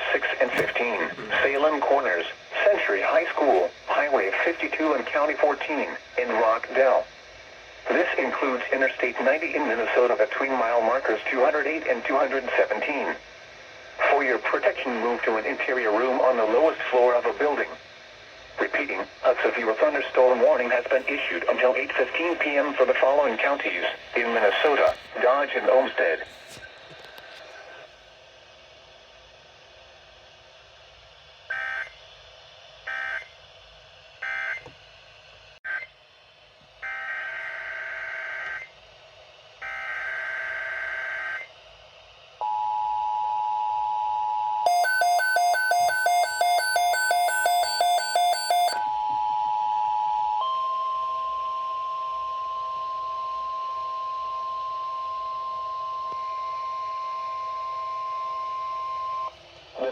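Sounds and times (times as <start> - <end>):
steady single alarm tone: 42.4 - 59.3
loud rapid beeping: 44.7 - 48.9
two-tone alert signal: 44.7 - 50.9.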